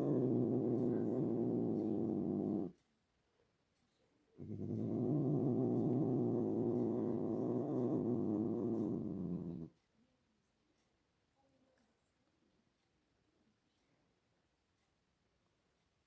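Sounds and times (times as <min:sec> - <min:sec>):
cat making long low sound: 0:00.0 - 0:02.7, 0:04.4 - 0:09.7.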